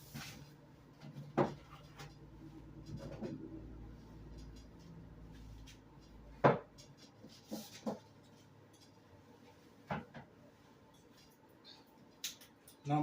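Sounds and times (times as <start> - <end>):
low hum: 1.6 - 6.3.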